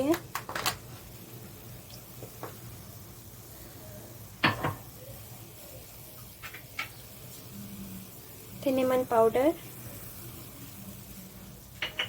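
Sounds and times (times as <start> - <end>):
utensils clinking against saucepan: 11.8 - 12.0.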